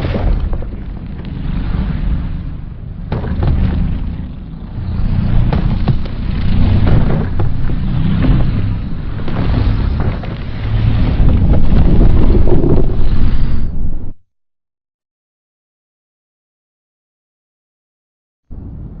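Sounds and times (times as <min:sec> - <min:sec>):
crackles: 0:00.0 - 0:13.8
deep monster rumble: 0:00.0 - 0:14.2.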